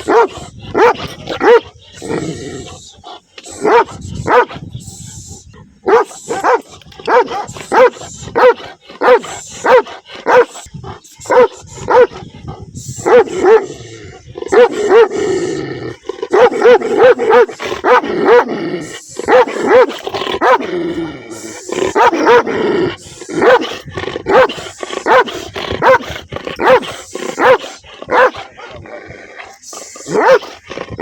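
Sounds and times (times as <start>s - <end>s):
large dog barking angrily: 0.0s - 2.8s, 3.4s - 4.7s, 5.8s - 12.3s, 13.0s - 31.0s.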